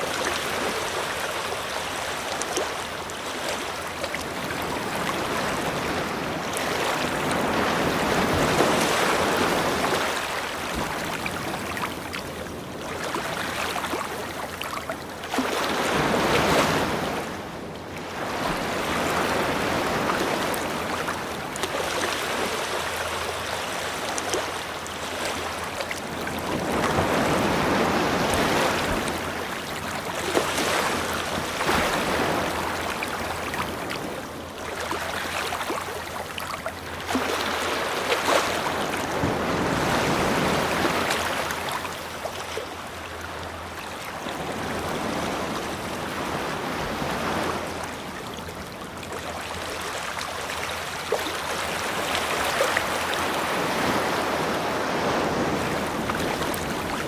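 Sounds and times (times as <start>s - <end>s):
ocean waves breaking: 0.0s - 57.0s.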